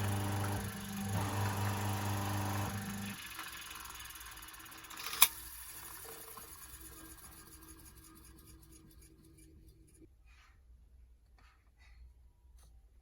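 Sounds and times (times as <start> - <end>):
electric motor whirring down: 0.0 - 7.0.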